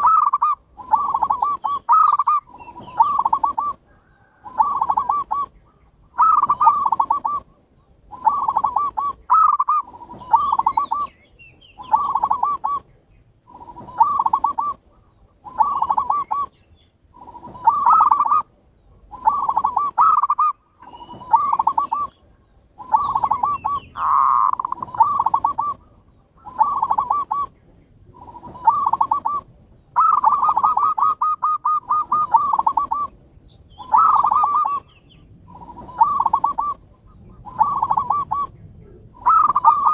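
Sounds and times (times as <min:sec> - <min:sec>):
doves cooing: 0:00.0 - 0:39.9.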